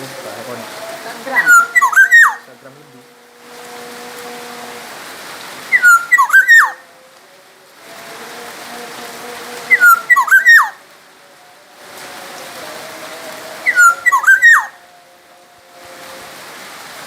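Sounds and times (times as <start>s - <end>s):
bird singing fluting whistles: 1.4s - 2.4s, 5.7s - 6.8s, 9.7s - 10.8s, 13.7s - 14.8s
steady hiss: 2.4s - 17.0s.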